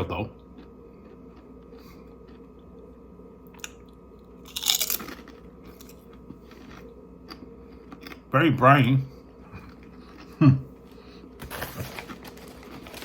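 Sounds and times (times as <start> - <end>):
potato chip crunching: 4.4 - 7.4, 11.4 - 13.0.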